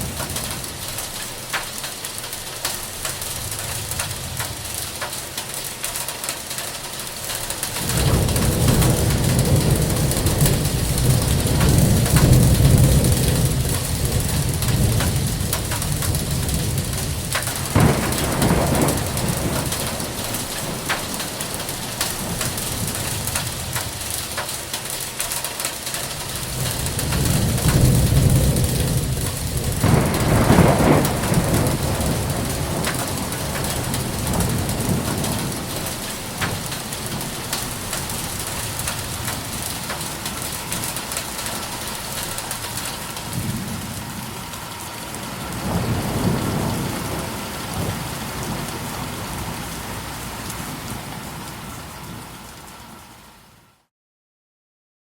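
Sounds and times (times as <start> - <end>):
thunder rolling: 0.0 - 1.2, 7.7 - 24.5, 26.4 - 52.1
hail and rain pelting down: 0.0 - 53.5.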